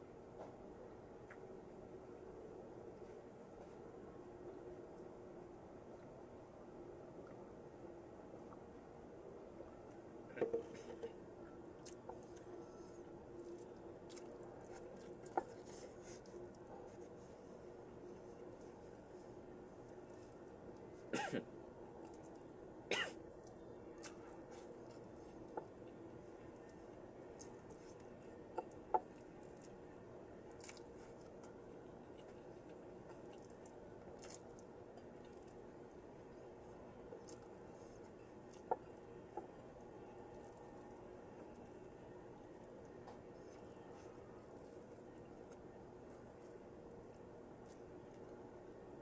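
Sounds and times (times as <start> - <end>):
faint steady hum: 0.0 - 49.0
person chewing vegetables: 9.8 - 21.1, 21.9 - 49.0.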